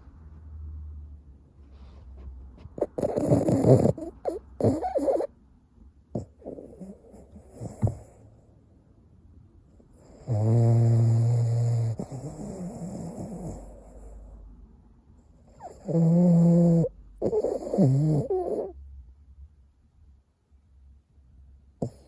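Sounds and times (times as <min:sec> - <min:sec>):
dog snoring: 0:02.6 - 0:05.3, 0:06.1 - 0:08.3, 0:09.9 - 0:14.4, 0:15.3 - 0:18.8, 0:21.8 - 0:22.0.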